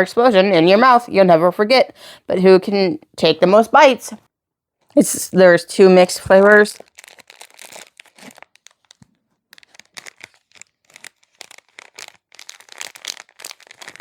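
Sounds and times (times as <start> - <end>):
plastic packaging crinkling: 6.5 - 14.0.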